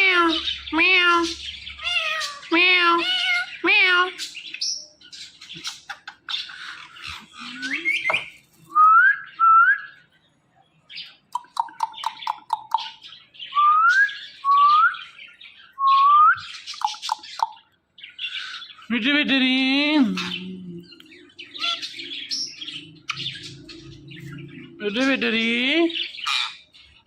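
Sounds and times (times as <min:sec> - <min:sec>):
parrot squawks and chirps: 0:00.0 - 0:08.4, 0:11.0 - 0:15.8, 0:16.4 - 0:18.9, 0:21.2 - 0:25.3, 0:25.9 - 0:27.0.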